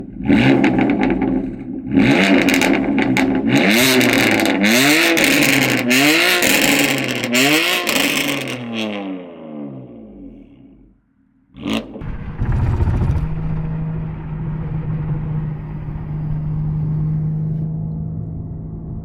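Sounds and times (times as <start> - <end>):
car engine revving hard: 0.0 - 10.3, 11.6 - 17.6
exhaust pops and crackles: 11.6 - 14.4.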